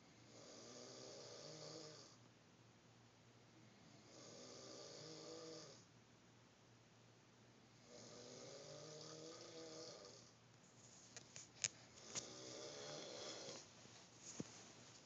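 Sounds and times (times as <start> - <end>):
person snoring: 0.2 - 2.2, 3.8 - 5.9, 7.8 - 10.3, 12.0 - 13.7.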